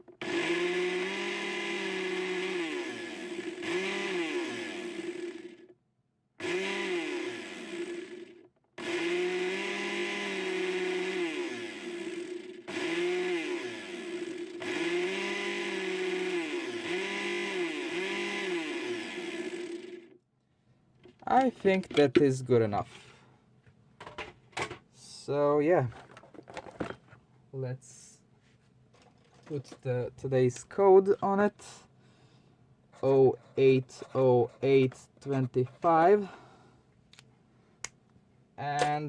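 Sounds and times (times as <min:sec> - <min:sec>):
blender motor running: 0:00.1 - 0:05.7, 0:06.4 - 0:20.2.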